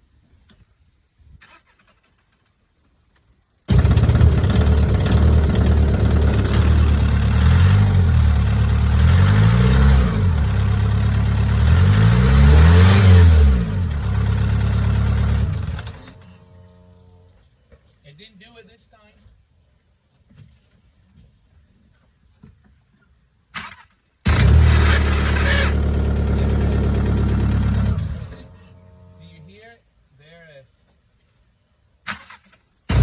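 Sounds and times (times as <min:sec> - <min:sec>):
car engine starting and revving: 0:03.7 - 0:17.2, 0:23.6 - 0:29.4, 0:32.1 - 0:33.0.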